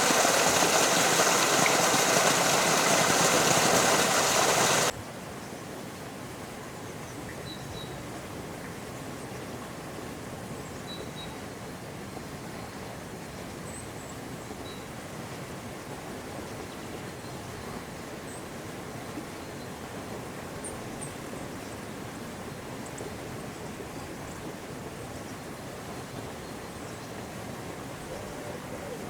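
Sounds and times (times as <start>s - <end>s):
small waterfall rushing: 0.0s - 5.0s.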